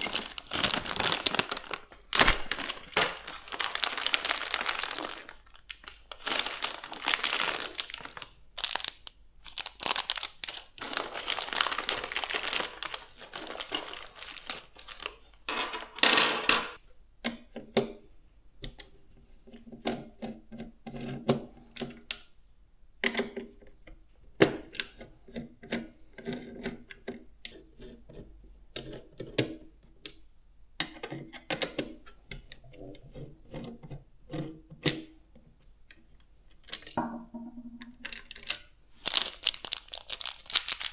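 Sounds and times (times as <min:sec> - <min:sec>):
parts clicking and knocking: 0:00.0 - 0:09.0
packaging crinkling and rustling: 0:00.0 - 0:16.0, 0:38.2 - 0:40.9.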